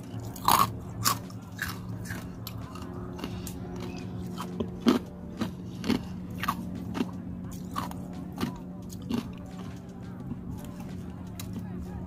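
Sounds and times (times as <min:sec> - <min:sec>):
crunchy chewing: 0:00.0 - 0:11.9
restaurant background hum: 0:00.0 - 0:12.0.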